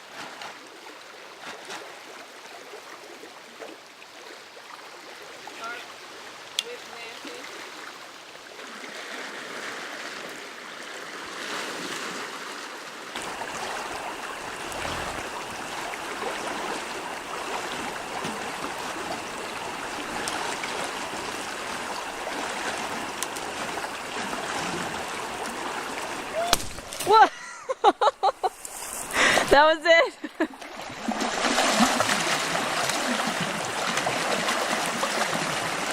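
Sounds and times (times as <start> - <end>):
river water rushing: 11.3 - 27.0, 30.5 - 35.9.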